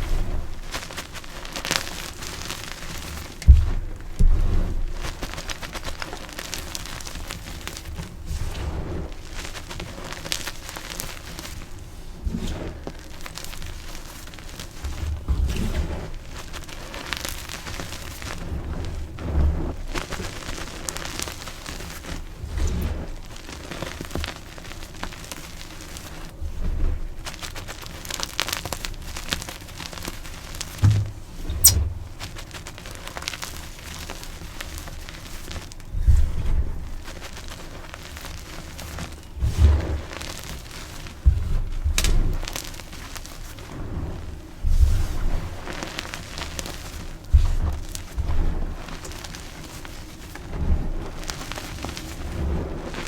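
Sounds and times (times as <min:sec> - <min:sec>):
dull low thumps: 0:30.8 - 0:32.4.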